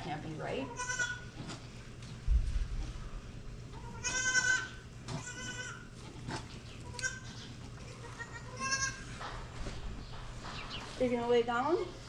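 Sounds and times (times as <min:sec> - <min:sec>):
goat bleating: 0:00.6 - 0:01.4, 0:03.7 - 0:09.2.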